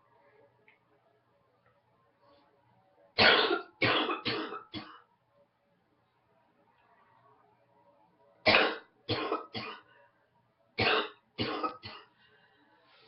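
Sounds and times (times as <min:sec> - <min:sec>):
woman coughing: 0:10.8 - 0:12.1.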